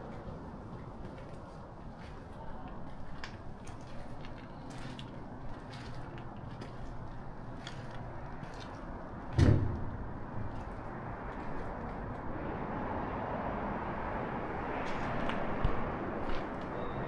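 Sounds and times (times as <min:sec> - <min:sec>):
steady background noise: 0:00.0 - 0:17.0
heavy thump: 0:09.4 - 0:10.0.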